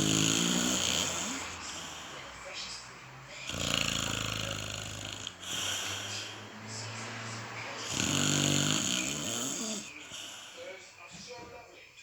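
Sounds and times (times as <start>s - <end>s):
person snoring: 0.0s - 2.4s, 3.4s - 6.9s, 7.8s - 10.7s.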